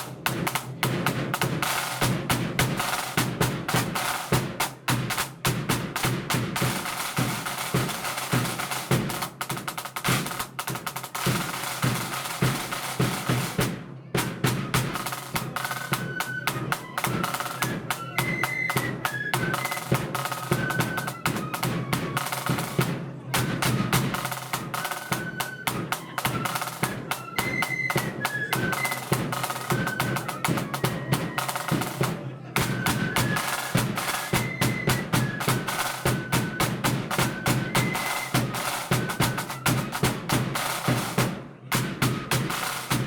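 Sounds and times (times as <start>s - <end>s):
snare drum rolls: 0.0s - 43.0s
flute melody: 14.4s - 41.2s, 42.1s - 43.0s.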